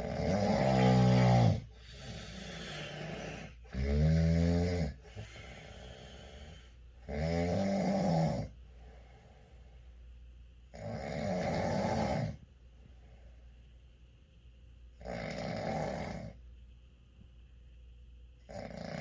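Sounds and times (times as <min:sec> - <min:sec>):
man snoring loudly: 0:00.0 - 0:06.5, 0:07.1 - 0:08.5, 0:10.7 - 0:12.4, 0:15.0 - 0:16.4, 0:18.5 - 0:19.0
breathy breaths: 0:00.6 - 0:03.8, 0:04.9 - 0:07.0, 0:08.5 - 0:10.2.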